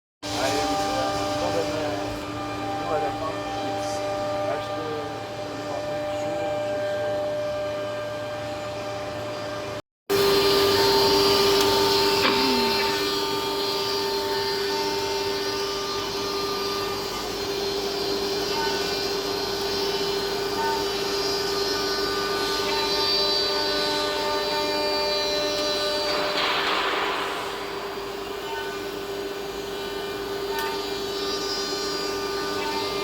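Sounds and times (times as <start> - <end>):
router spindle whining: 10.1 - 33.0.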